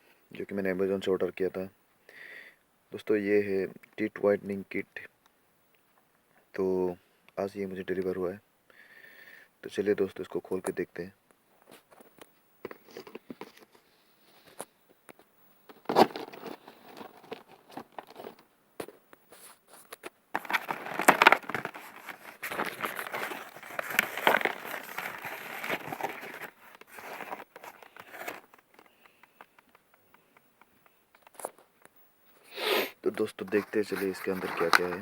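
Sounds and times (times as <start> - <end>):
packaging crinkling and tearing: 15.8 - 18.4, 19.9 - 29.7, 33.4 - 35.0.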